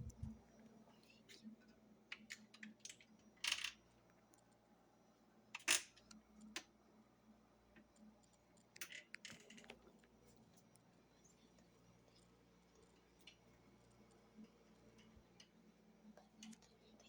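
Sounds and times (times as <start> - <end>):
faint steady hum: 0.0 - 17.0
clicks and rustles of handling: 7.7 - 17.0.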